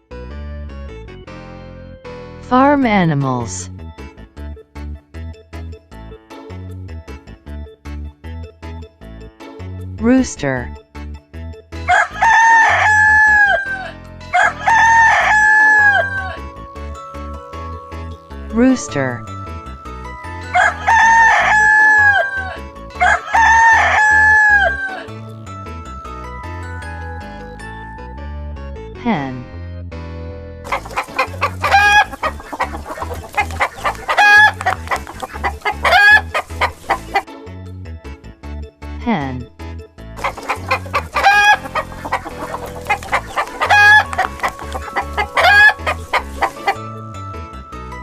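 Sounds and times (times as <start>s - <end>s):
light background music: 0.1s - 48.0s
rooster crowing: 11.9s - 16.4s, 20.5s - 25.1s, 30.7s - 34.8s, 35.6s - 37.2s, 40.2s - 46.8s
hen clucking: 30.7s - 37.2s, 40.2s - 46.8s
hen squawking: 30.7s - 37.2s, 40.2s - 46.8s.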